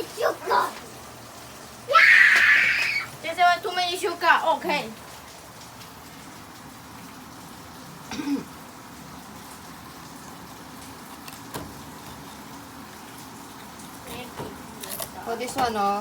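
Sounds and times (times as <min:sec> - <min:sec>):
throat-clearing hum: 0:08.1 - 0:08.6.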